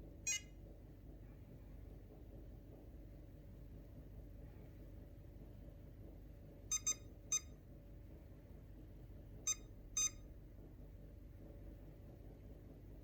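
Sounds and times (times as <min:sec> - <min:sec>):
high-pitched robot vacuum beeps: 0:06.7 - 0:07.6, 0:09.5 - 0:10.2.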